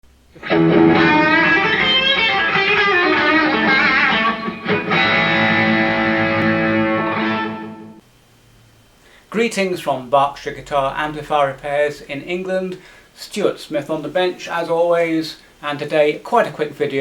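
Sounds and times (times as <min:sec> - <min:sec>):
electric guitar playing: 0:00.3 - 0:08.0.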